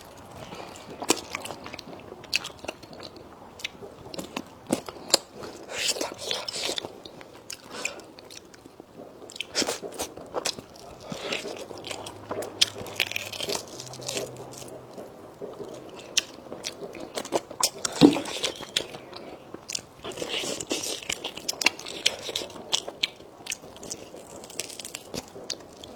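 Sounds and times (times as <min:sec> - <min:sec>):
person chewing crunchy food: 0:00.0 - 0:25.9.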